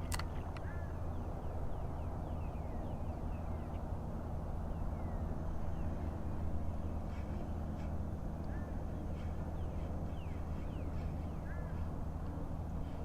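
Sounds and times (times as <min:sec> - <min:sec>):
sharp click: 0:00.0 - 0:00.7
small birds chirping: 0:00.0 - 0:04.0, 0:04.6 - 0:13.0
steady low rumble: 0:00.0 - 0:13.0.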